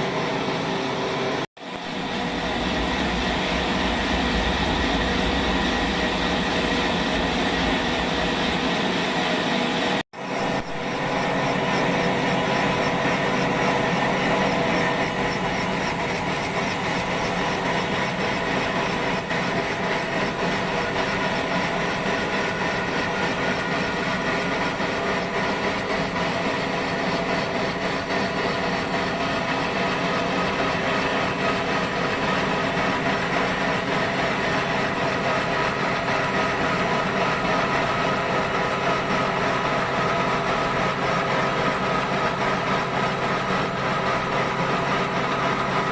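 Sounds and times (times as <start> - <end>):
saw cutting wood: 10.2 - 45.9.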